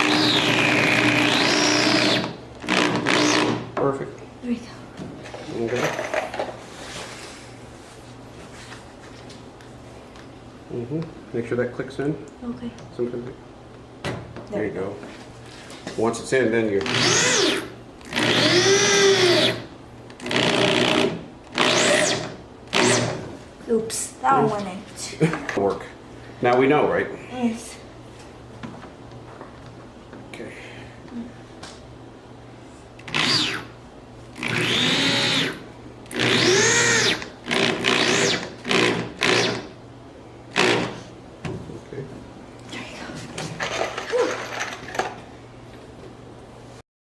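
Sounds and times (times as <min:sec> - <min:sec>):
cordless drill driving screws: 0:00.0 - 0:03.6, 0:16.8 - 0:23.2, 0:33.0 - 0:33.7, 0:34.4 - 0:39.7, 0:40.5 - 0:41.0.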